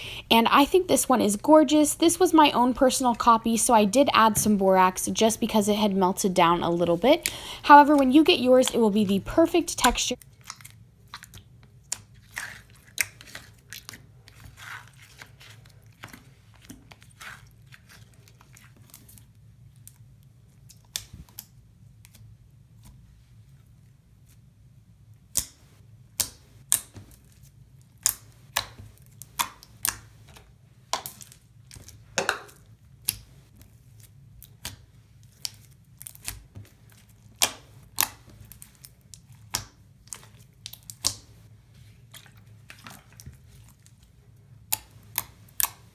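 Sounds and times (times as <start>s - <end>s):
slime clicking and popping: 28.0s - 30.0s, 37.4s - 41.3s.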